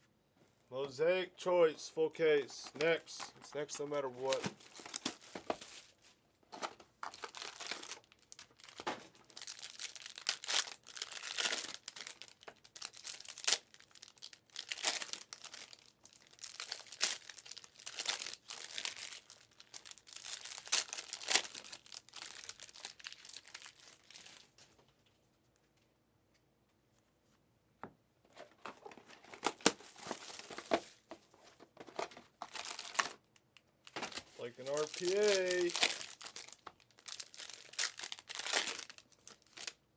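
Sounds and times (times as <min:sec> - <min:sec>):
card wrappers tearing and crinkling: 0:02.2 - 0:24.6, 0:28.8 - 0:31.1, 0:31.9 - 0:33.3, 0:33.9 - 0:39.8.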